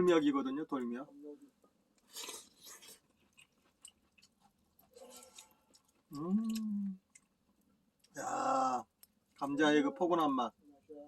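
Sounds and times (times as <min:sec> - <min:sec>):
man chewing: 0:02.0 - 0:08.2
man humming mmm: 0:06.1 - 0:07.0.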